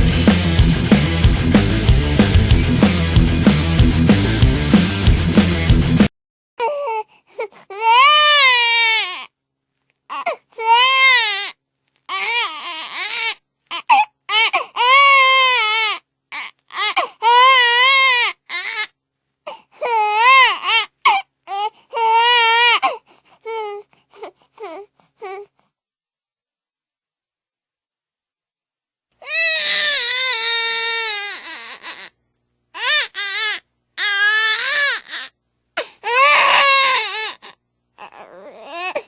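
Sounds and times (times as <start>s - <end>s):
baby crying: 6.6s - 9.3s, 10.1s - 25.5s, 29.2s - 32.2s, 32.8s - 39.0s
baby gasping for breath: 35.8s - 36.1s.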